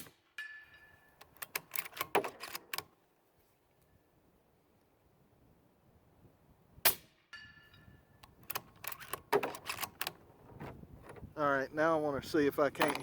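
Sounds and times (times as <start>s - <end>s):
small clicks and knocks: 8.2s - 11.3s.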